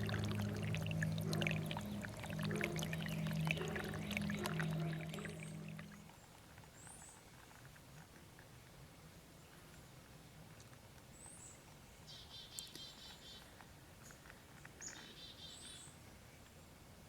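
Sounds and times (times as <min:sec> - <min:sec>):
songbird singing faintly: 0:11.1 - 0:16.8.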